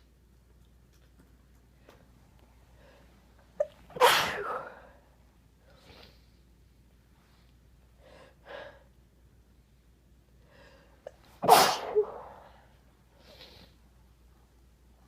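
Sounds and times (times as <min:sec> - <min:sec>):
person sneezing: 0:03.6 - 0:04.9, 0:11.1 - 0:12.6.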